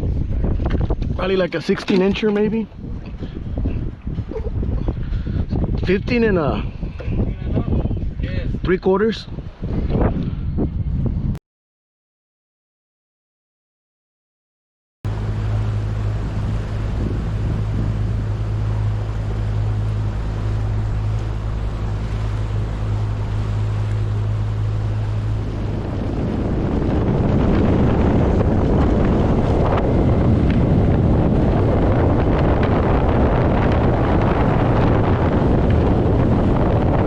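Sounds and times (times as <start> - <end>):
wind buffeting microphone: 0.0 - 11.4, 15.1 - 37.0
boat motor humming: 15.1 - 37.0
water rushing: 15.1 - 37.0.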